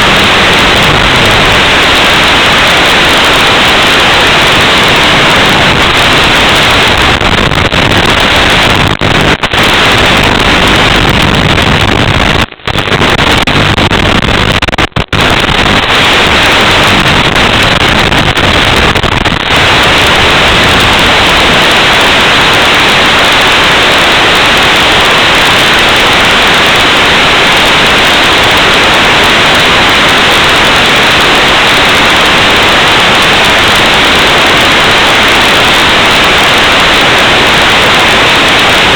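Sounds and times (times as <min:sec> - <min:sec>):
loud static hiss: 0:00.0 - 0:38.9.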